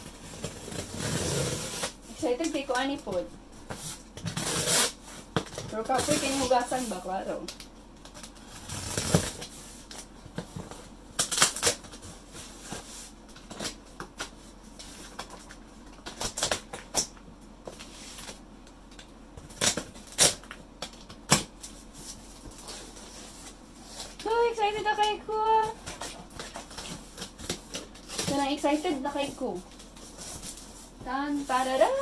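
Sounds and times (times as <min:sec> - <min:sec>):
gift packaging rustling: 0:00.1 - 0:07.4, 0:21.6 - 0:32.0.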